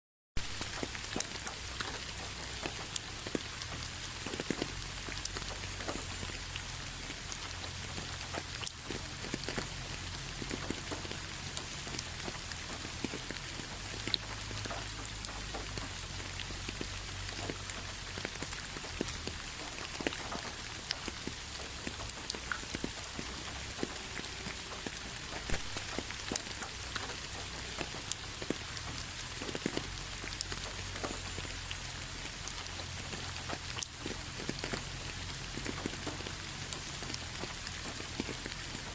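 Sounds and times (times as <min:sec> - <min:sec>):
raindrops ticking close by: 0:00.4 - 0:38.9
steady rain hiss: 0:00.4 - 0:38.9.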